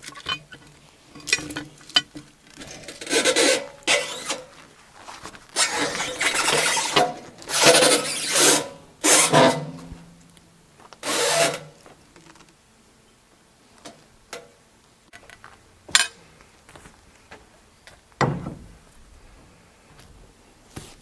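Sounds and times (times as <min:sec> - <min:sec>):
wood scraping slide: 0:02.6 - 0:09.7, 0:11.0 - 0:11.7
heavy wood thump: 0:18.2 - 0:18.8.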